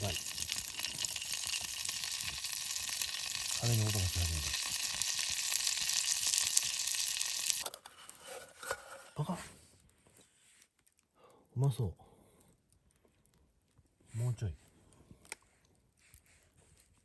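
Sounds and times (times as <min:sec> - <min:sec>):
food sizzling in a frying pan: 0:00.0 - 0:07.7.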